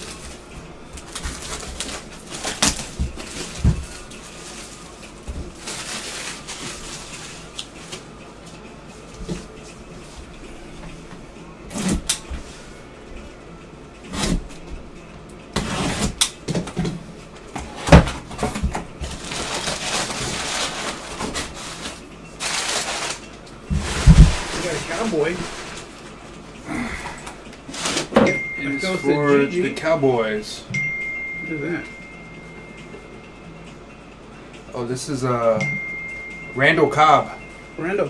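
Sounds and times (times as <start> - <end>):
packaging rustling and scraping: 0.0 - 8.4, 17.6 - 28.3.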